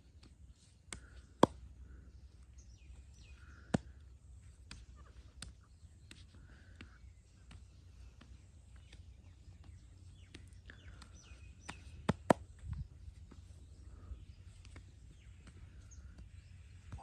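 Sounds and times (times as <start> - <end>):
bird chirps: 4.8 - 17.0.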